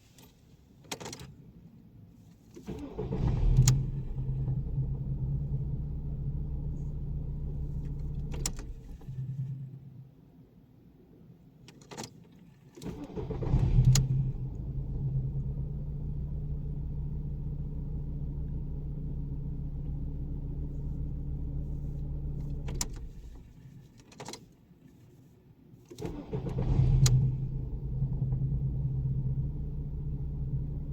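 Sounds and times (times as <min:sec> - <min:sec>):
ignition key clicks: 0:00.2 - 0:01.4, 0:07.6 - 0:09.2, 0:11.6 - 0:12.2, 0:22.3 - 0:24.5
car engine starting and idling: 0:02.2 - 0:10.0, 0:12.8 - 0:24.4, 0:25.9 - 0:30.9
strange noise during engine start: 0:02.6 - 0:06.9, 0:12.8 - 0:15.5, 0:25.9 - 0:29.0.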